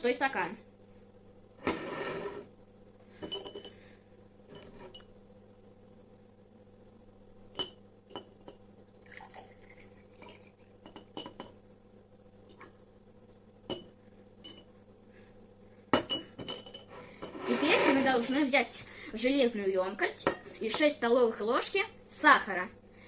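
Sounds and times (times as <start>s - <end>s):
glass and strainer clinking: 3.2s - 3.8s, 7.5s - 8.6s, 9.2s - 11.6s, 13.7s - 14.7s, 16.0s - 17.7s.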